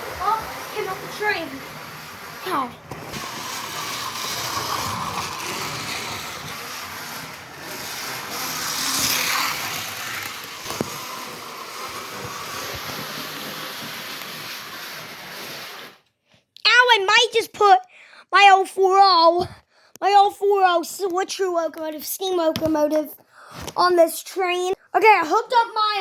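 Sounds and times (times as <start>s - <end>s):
rail clicks: 0.0s - 14.8s
model train running on track: 0.0s - 16.0s.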